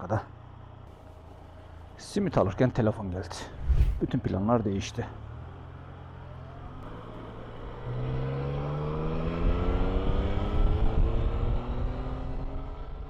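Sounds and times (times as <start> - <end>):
motorcycle engine accelerating: 5.8 - 13.0.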